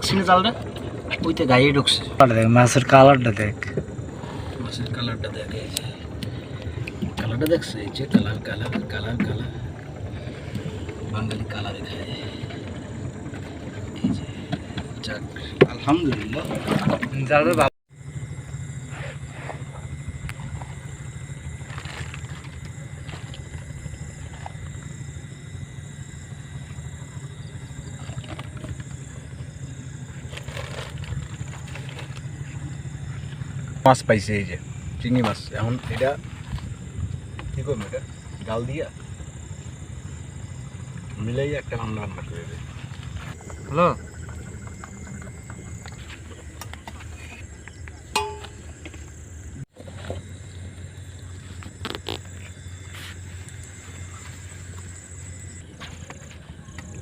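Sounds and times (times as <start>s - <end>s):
low rumble: 0.0s - 17.1s, 18.0s - 57.0s
low hum: 0.0s - 57.0s
night insects droning: 0.0s - 57.0s
metallic clink: 48.2s - 48.7s.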